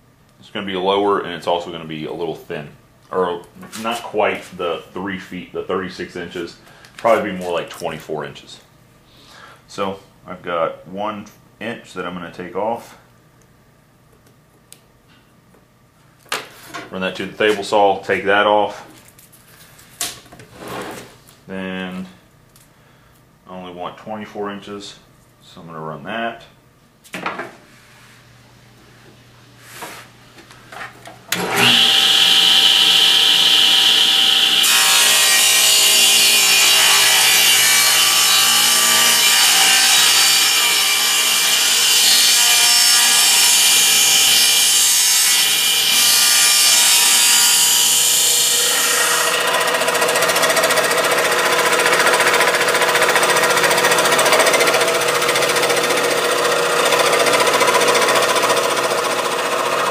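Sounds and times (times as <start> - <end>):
table saw cutting wood: 31.3 - 59.9.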